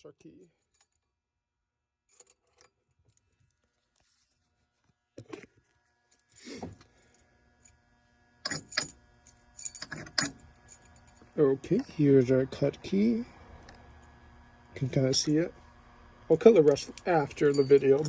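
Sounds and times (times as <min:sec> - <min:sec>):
faint steady hum: 0:02.1 - 0:18.0
metal keys clinking: 0:08.5 - 0:08.9, 0:09.6 - 0:11.3, 0:16.3 - 0:18.0.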